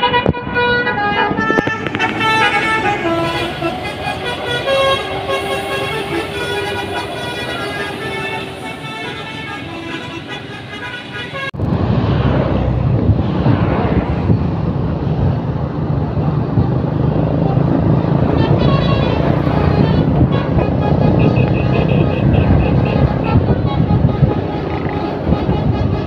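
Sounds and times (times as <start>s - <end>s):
multi-tone bus horn toots: 0.0s - 11.6s, 18.1s - 26.0s
bus engine running: 0.0s - 26.0s
traffic noise: 0.0s - 26.0s.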